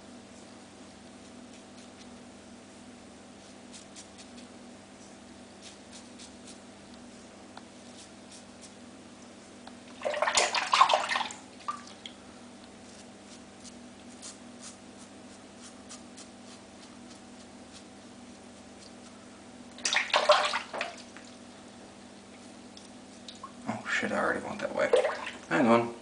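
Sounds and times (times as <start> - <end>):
water splashing: 10.0 - 12.2, 19.8 - 21.4, 24.9 - 25.5.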